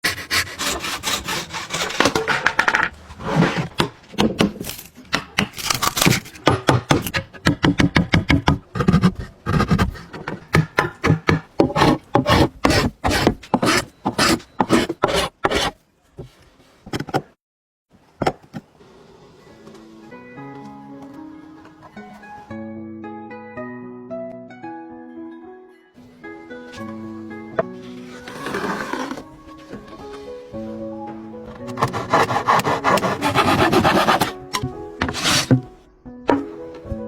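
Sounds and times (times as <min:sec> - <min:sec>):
hand tool rasping wood: 0:00.0 - 0:03.9, 0:05.4 - 0:15.8, 0:31.8 - 0:34.4, 0:35.0 - 0:35.7.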